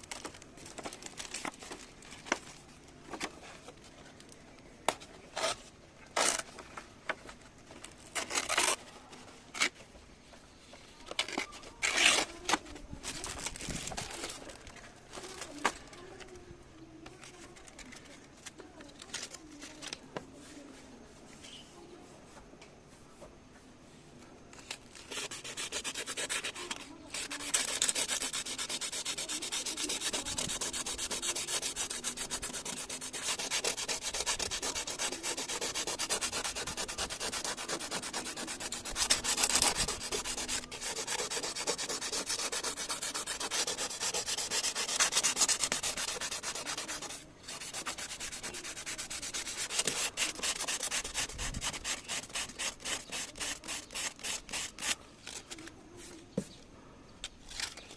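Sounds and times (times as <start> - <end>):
sanding car body panel: 25.3 - 26.6, 27.2 - 54.8.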